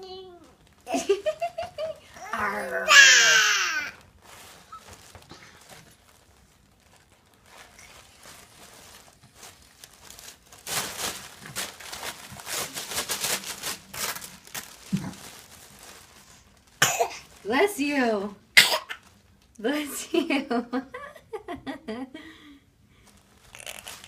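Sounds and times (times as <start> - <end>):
paper tearing and crinkling: 2.3 - 17.8, 23.2 - 24.0.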